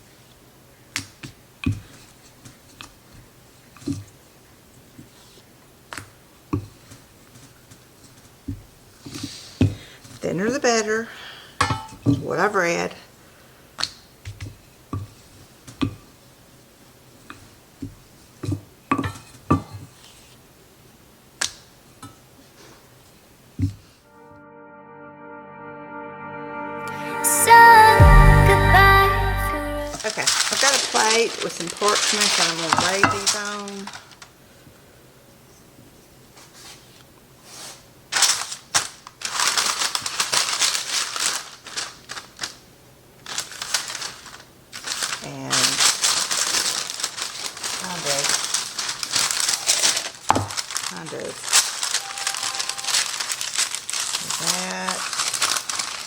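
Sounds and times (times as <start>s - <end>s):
parchment paper crinkling: 30.0s - 34.4s, 38.1s - 56.0s.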